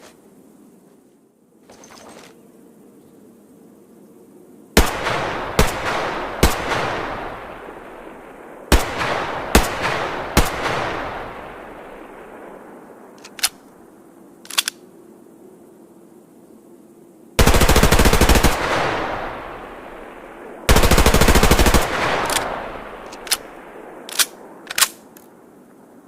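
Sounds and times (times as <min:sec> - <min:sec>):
gunshots with long echo: 0:04.8 - 0:13.7, 0:17.4 - 0:25.1
sharp clicks: 0:13.2 - 0:13.8, 0:14.4 - 0:14.8, 0:22.2 - 0:25.4.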